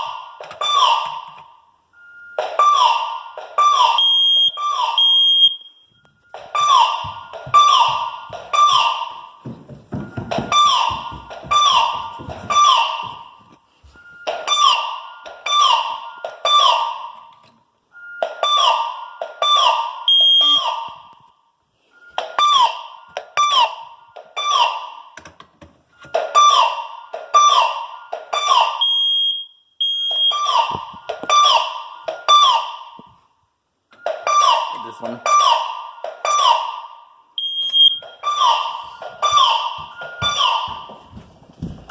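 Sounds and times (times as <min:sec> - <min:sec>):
fire alarm pulses: 0:00.0 - 0:41.9
high steady beep: 0:37.4 - 0:40.9.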